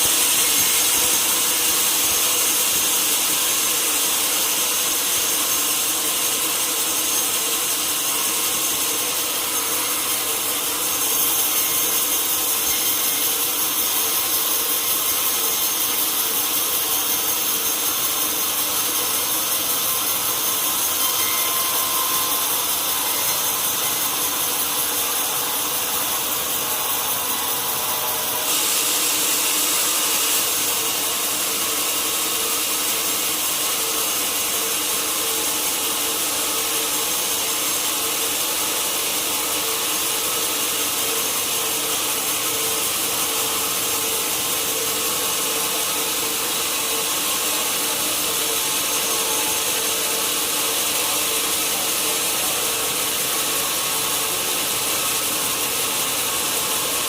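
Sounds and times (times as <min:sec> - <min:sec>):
sawmill saw cutting log: 0:00.0 - 0:57.0.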